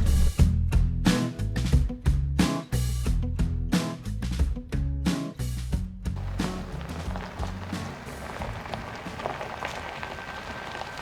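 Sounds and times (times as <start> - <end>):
music with steady beat and bass: 0.0 - 8.6.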